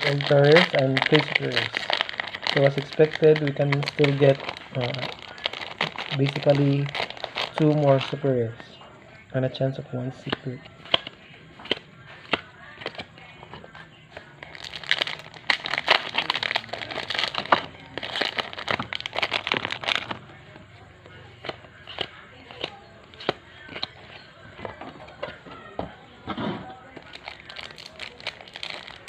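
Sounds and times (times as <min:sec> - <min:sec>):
wrappers crinkling and tearing: 0:00.0 - 0:08.3, 0:14.4 - 0:20.2, 0:27.0 - 0:29.0
cards clicking and tapping: 0:10.2 - 0:14.3, 0:21.4 - 0:25.4.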